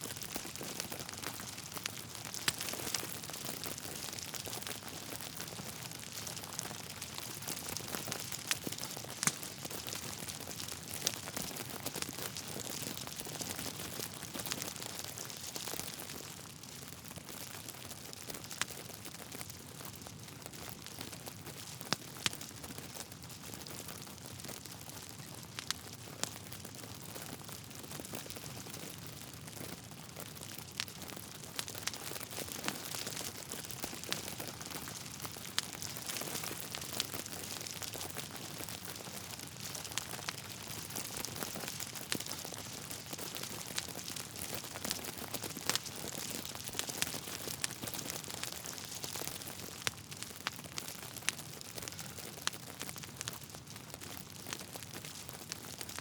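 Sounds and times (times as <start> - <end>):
fire crackling and hissing: 0.0 - 56.0
sharp pops from burning logs: 0.2 - 16.0, 30.2 - 56.0.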